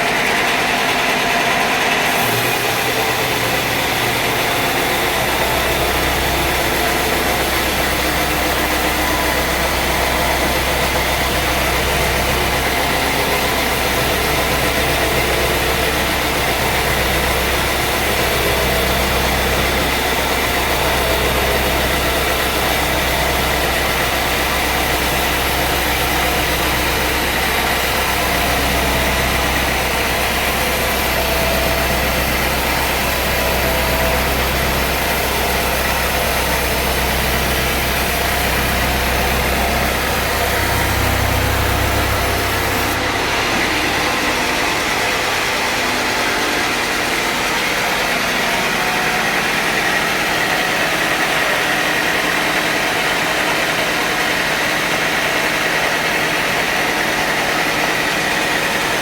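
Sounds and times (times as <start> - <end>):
sawmill engine humming: 0.0 - 59.0.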